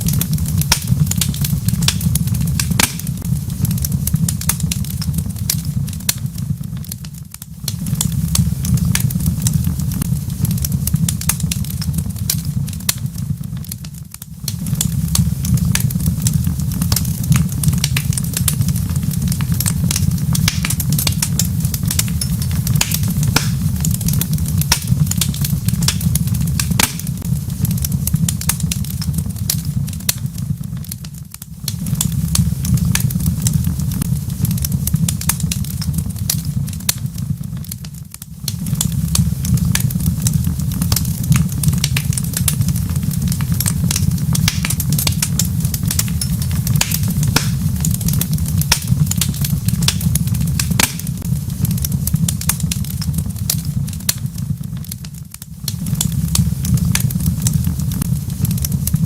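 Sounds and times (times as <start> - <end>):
deep steady rumble: 0.0 - 59.0
wood fire crackling: 0.0 - 59.0.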